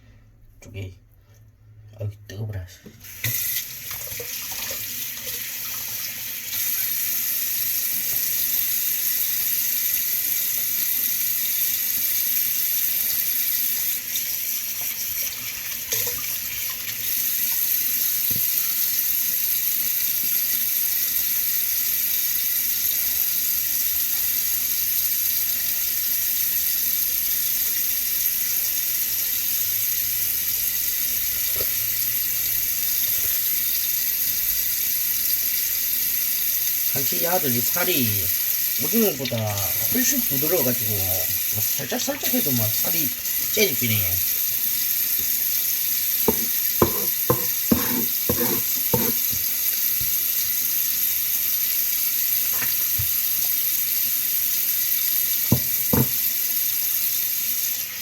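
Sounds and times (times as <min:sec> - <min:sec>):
tap running into sink: 0:18.2 - 0:18.6, 0:37.0 - 0:44.0, 0:46.2 - 0:50.2, 0:52.5 - 0:53.6, 0:55.4 - 0:56.3.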